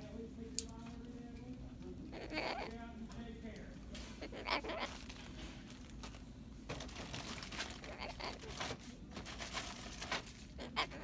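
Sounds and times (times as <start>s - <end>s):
crinkling and rustling: 4.9s - 10.5s.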